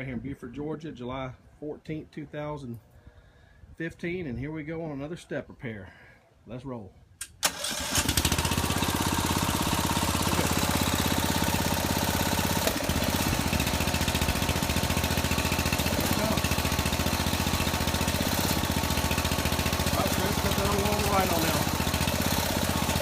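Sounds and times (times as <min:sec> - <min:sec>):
small gasoline engine running: 0:07.5 - 0:23.0.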